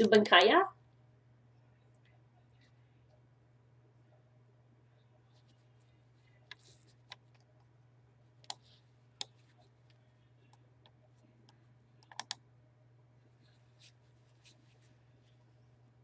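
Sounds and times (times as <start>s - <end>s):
steady low hum: 0.0s - 16.0s
computer mouse clicks: 12.0s - 12.4s.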